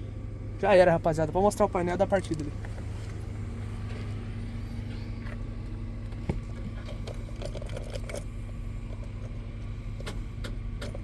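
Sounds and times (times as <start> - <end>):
low mechanical hum: 0.0 - 11.0
light clicks and rattles: 2.1 - 3.2.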